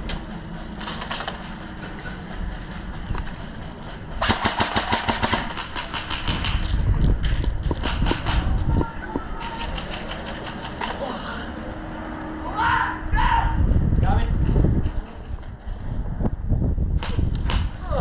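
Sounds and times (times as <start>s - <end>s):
airsoft guns full-auto bursts: 4.2s - 6.6s
wind rumble on microphone: 5.4s - 10.0s, 12.5s - 18.0s.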